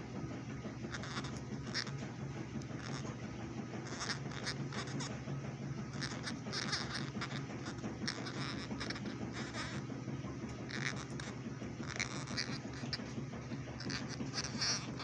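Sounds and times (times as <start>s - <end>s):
steady low hum: 0.0s - 15.0s
parrot chirps and clicks: 0.9s - 3.2s, 3.8s - 5.2s, 5.9s - 9.9s, 10.5s - 13.2s, 13.8s - 15.0s.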